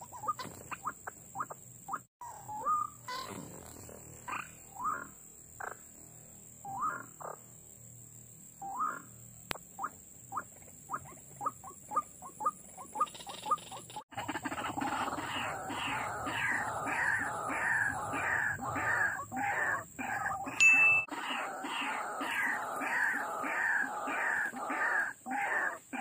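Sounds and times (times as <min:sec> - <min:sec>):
waterhen calling: 0:00.0 - 0:03.4, 0:09.8 - 0:26.0.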